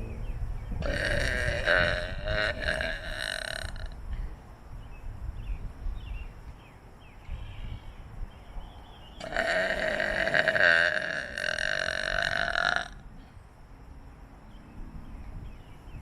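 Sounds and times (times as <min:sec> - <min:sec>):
long drawn-out burps: 0:00.8 - 0:04.0, 0:09.2 - 0:13.1.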